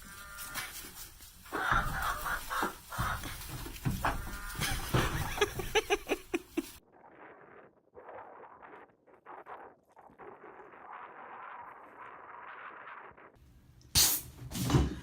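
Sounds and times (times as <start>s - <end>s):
animal calls: 0.0s - 6.8s.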